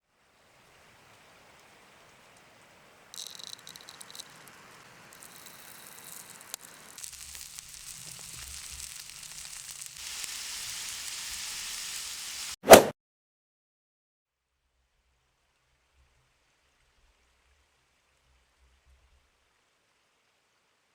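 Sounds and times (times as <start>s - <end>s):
food sizzling in hot oil: 0.6s - 12.6s.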